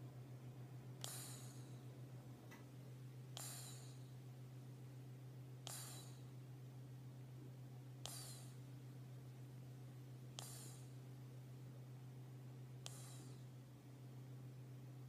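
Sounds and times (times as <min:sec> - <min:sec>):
steady low hum: 0:00.0 - 0:15.0
cat snoring faintly: 0:01.0 - 0:01.9, 0:03.3 - 0:04.2, 0:05.6 - 0:06.3, 0:08.0 - 0:08.6, 0:10.4 - 0:11.0, 0:12.8 - 0:13.5.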